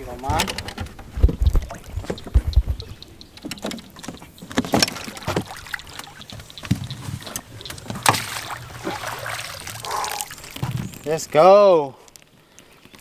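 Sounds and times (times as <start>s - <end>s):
water splashing: 0.0s - 11.4s
knocks in a boat: 0.2s - 9.0s.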